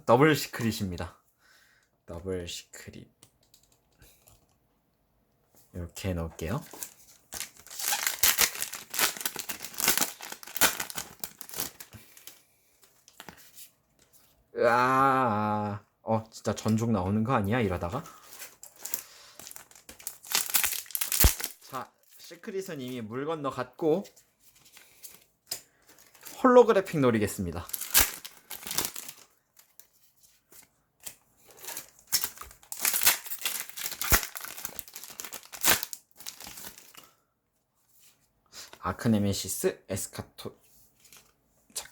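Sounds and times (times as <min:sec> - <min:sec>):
foil wrapper crinkling and tearing: 0:06.7 - 0:12.4, 0:18.1 - 0:22.4, 0:25.9 - 0:26.5, 0:27.6 - 0:29.9, 0:31.0 - 0:37.2.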